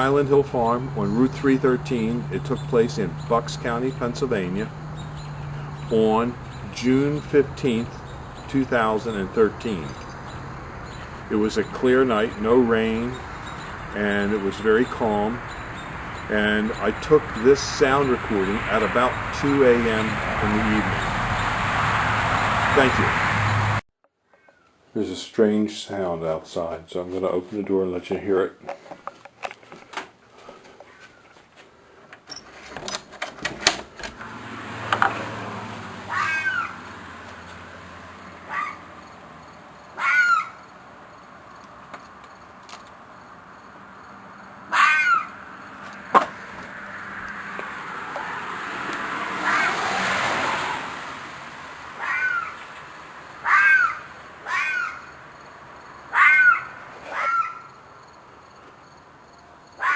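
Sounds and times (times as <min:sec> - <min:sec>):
door opening with clicks and knocks: 0:32.2 - 0:34.2
animal screeching cry: 0:36.1 - 0:36.8, 0:38.5 - 0:38.8, 0:40.0 - 0:40.6, 0:44.7 - 0:45.4, 0:49.4 - 0:49.9, 0:52.0 - 0:52.6, 0:53.4 - 0:55.1, 0:56.1 - 0:57.7.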